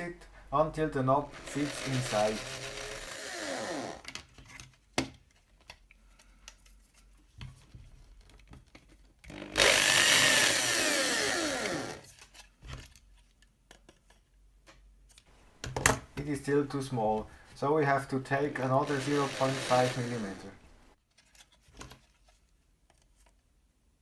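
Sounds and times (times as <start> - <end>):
small electric drill boring plastic: 1.3 - 4.1, 9.3 - 12.1, 18.8 - 20.6.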